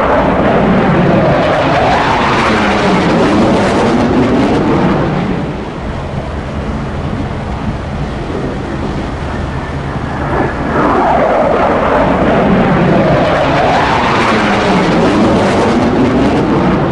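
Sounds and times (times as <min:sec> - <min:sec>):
fighter jet engine roar: 0:00.0 - 0:16.9
jet whooshing past: 0:00.0 - 0:16.9.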